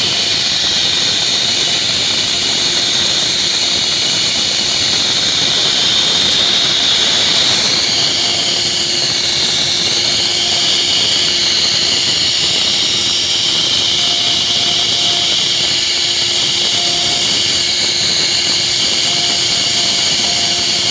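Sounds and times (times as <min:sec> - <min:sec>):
router spindle cutting wood: 0:00.0 - 0:20.9.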